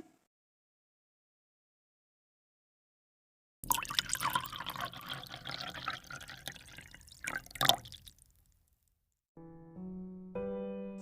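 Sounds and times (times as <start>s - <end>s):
liquid pouring and dripping: 3.6s - 8.6s.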